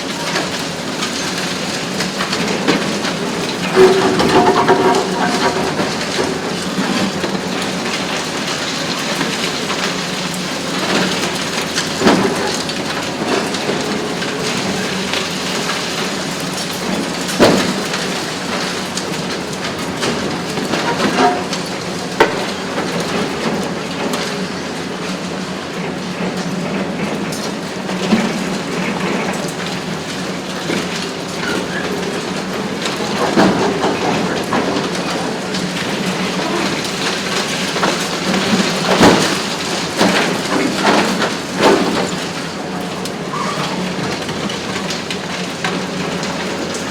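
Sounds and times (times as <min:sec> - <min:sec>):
excavator engine running: 0:00.0 - 0:15.5
concrete breaking and debris falling: 0:01.0 - 0:09.8.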